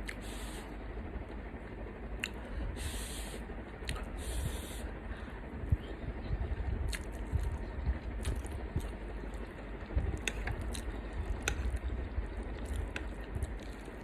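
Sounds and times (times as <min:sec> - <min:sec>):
chewing close to microphone: 0:06.8 - 0:14.0.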